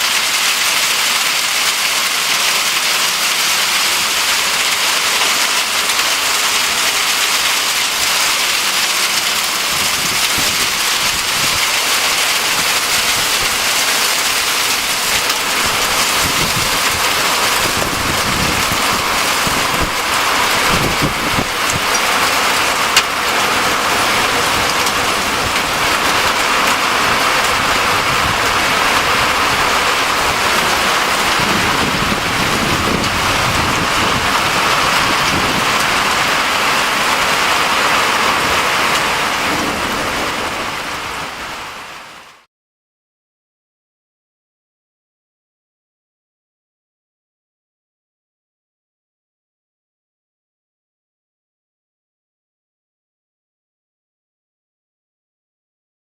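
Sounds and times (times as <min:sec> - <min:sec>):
heavy rain pouring: 0:00.0 - 0:42.5
wind gusts rumbling: 0:03.7 - 0:42.2.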